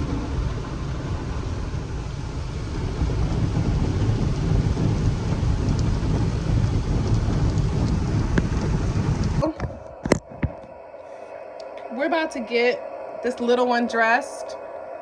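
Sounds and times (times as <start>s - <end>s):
car wash water spray and drumming: 0.0s - 9.4s.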